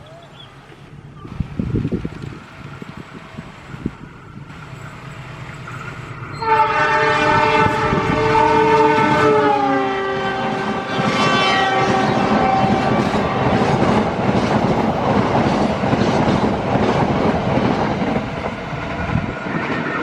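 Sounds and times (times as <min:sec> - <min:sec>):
train rumbling: 0:00.0 - 0:20.0
locomotive horn blast: 0:06.3 - 0:13.9.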